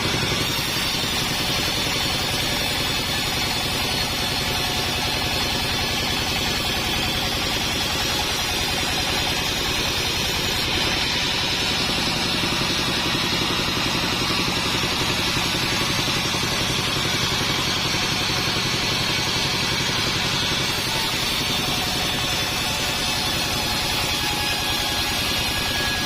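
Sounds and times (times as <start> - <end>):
band sawmill running: 0.0 - 26.0.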